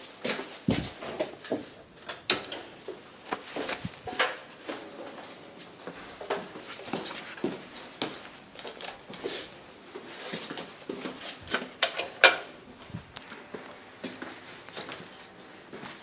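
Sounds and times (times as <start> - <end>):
clicks and knocks of handling: 10.3 - 15.2.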